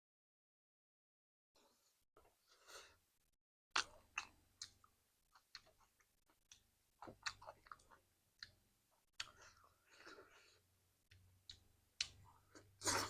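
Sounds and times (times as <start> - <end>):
wet chewing and lip smacks: 3.8 - 9.7.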